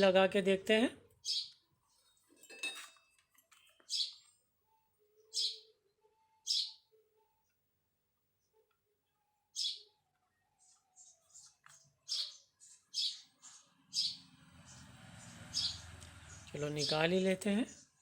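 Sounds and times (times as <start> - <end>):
small bird chirping: 1.2 - 2.2, 3.5 - 4.4, 5.1 - 7.6, 9.4 - 18.0.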